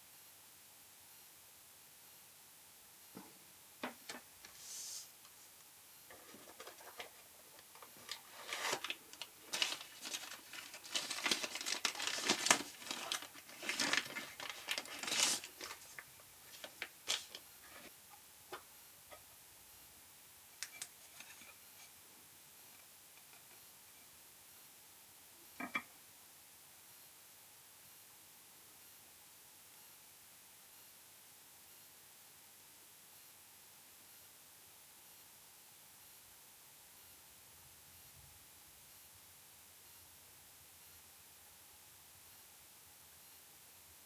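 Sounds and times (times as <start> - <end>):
packaging crinkling and rustling: 6.1 - 17.9
clicks and taps: 25.6 - 25.9.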